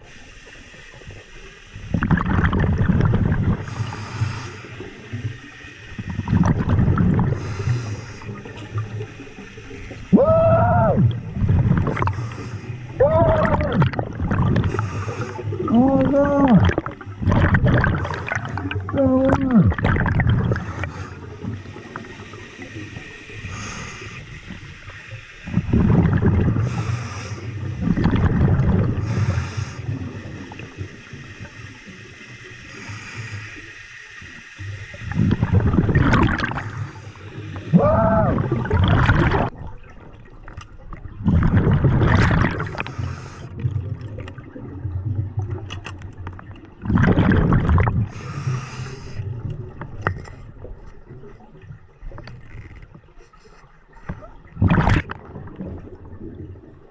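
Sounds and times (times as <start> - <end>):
bubbles gurgling: 1.7 - 32.9, 34.4 - 52.4, 54.2 - 56.9
diver breathing through regulator: 3.6 - 5.2, 7.3 - 8.6, 11.8 - 13.0, 14.6 - 15.8, 20.4 - 24.7, 26.5 - 28.0, 29.0 - 30.0, 32.6 - 33.8, 42.7 - 43.6, 48.0 - 49.4.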